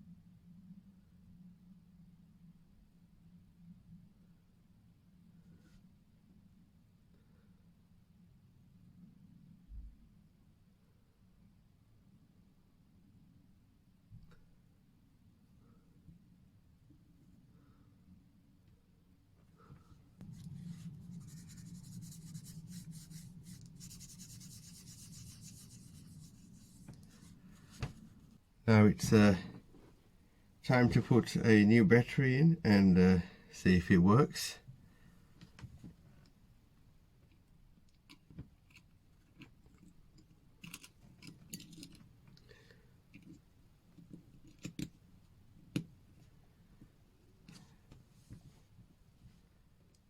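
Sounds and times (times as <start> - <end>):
low steady hum: 0.0 - 50.0
faint rubbing and scraping: 19.6 - 32.2.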